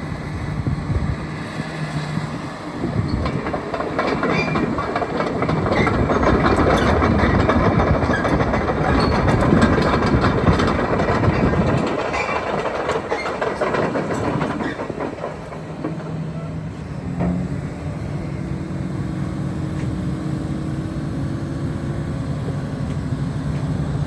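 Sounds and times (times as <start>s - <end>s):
diesel engine running: 0.0s - 24.0s
steel tracks clanking: 2.3s - 18.2s.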